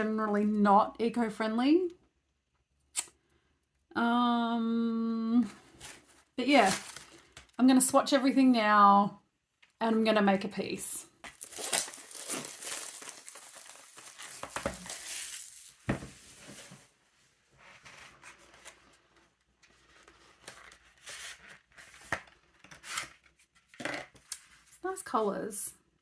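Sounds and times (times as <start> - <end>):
packaging crinkling and tearing: 6.6 - 7.6, 11.3 - 15.9.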